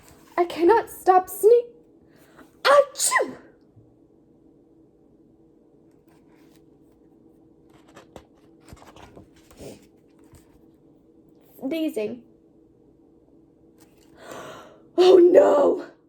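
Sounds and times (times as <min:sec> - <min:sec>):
low steady hum: 0:00.0 - 0:16.0
paper pages rustling and turning: 0:06.0 - 0:07.0, 0:07.6 - 0:10.7.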